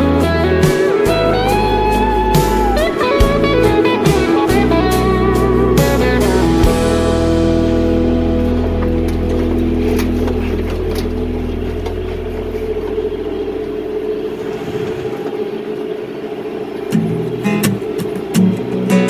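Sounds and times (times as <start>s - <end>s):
song playing: 0.0s - 13.2s
guitar music: 0.0s - 14.4s, 16.5s - 19.0s
tractor diesel engine running: 0.0s - 19.0s.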